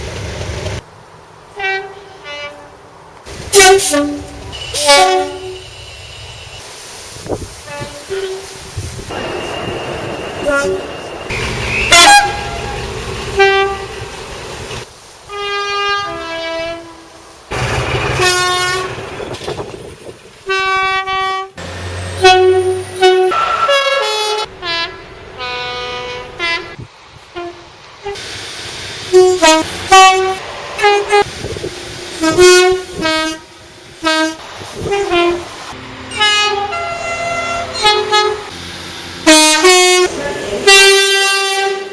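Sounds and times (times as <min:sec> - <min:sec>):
locomotive two-tone horns: 0:01.6 - 0:02.8, 0:03.5 - 0:06.2, 0:07.6 - 0:14.1, 0:15.3 - 0:19.1, 0:20.4 - 0:28.2, 0:29.1 - 0:31.3, 0:32.2 - 0:35.5, 0:36.1 - 0:38.6, 0:39.2 - 0:41.9.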